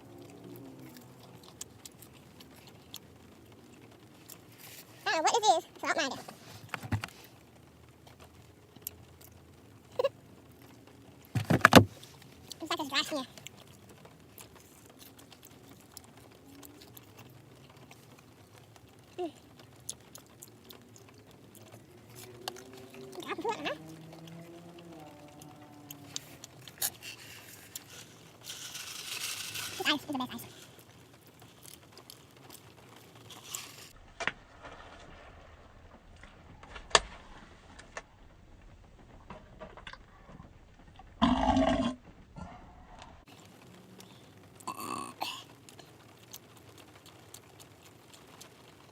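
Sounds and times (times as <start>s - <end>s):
chewing and lip-smacking: 0.1s - 5.0s, 11.9s - 34.0s, 43.3s - 48.9s
loud low burp: 41.2s - 42.8s, 44.6s - 45.5s
eating clicks and smacks: 45.6s - 48.9s.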